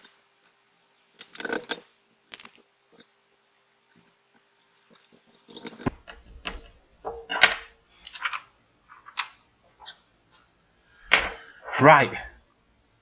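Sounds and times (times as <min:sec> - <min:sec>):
adhesive film crinkling: 0:00.0 - 0:05.9.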